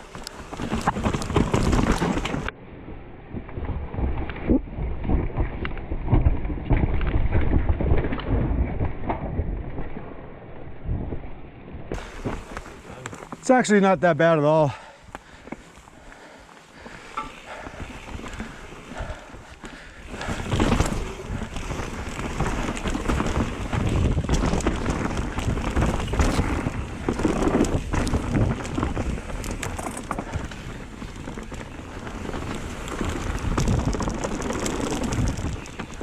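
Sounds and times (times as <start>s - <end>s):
bike rattling over bumps: 0.0s - 36.0s
bike tyres crunching over dirt: 0.0s - 36.0s.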